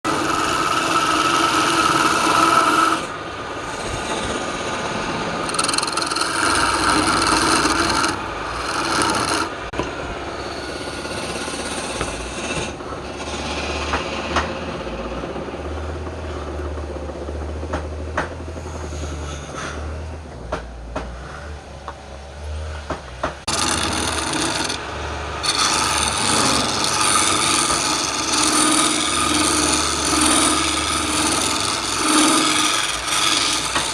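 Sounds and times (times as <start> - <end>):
lathe tool cutting wood: 0.0 - 15.2, 23.4 - 33.9.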